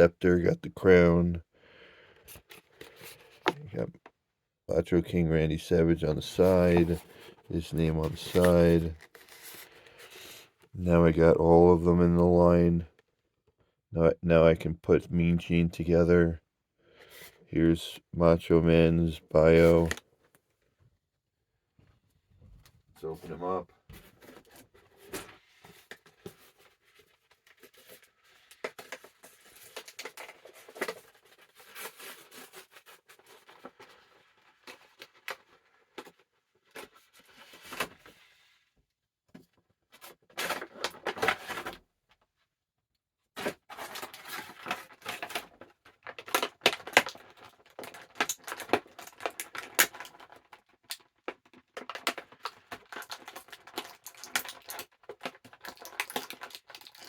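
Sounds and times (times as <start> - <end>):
plastic and cardboard crinkling: 6.2 - 10.6, 19.4 - 20.0, 23.1 - 38.3, 39.9 - 41.8, 43.4 - 57.0
box being opened by hand: 6.3 - 10.2.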